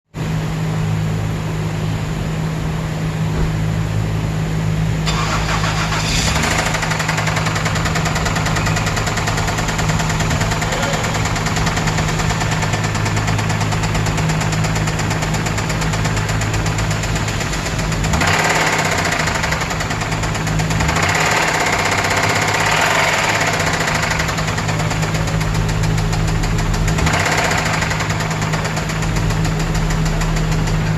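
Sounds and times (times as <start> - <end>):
car engine hum: 0.2 - 30.9.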